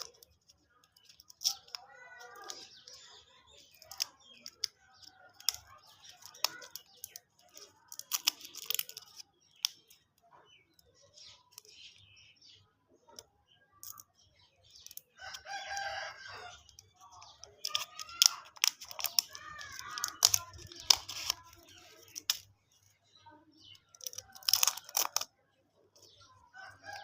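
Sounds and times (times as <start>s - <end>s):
plastic wrappers crinkling: 0.0s - 9.9s, 16.6s - 22.5s, 23.8s - 25.3s.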